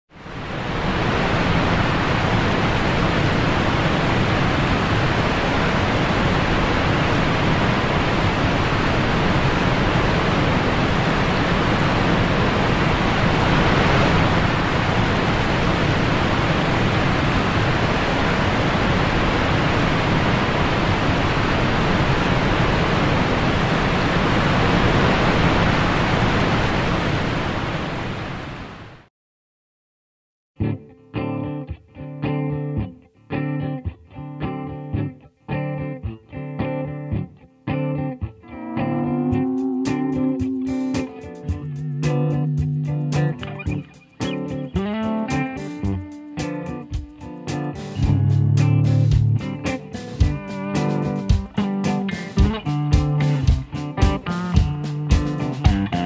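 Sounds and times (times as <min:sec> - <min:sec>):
waterfall rushing: 0:00.2 - 0:29.0.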